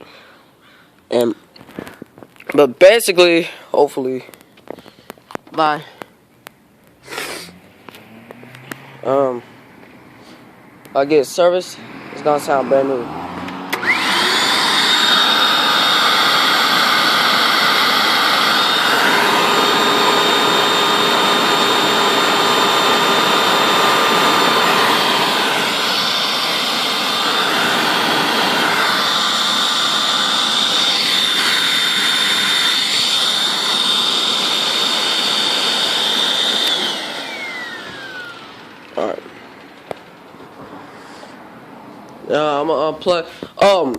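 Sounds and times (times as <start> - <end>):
vacuum cleaner whine: 13.7 - 40.0.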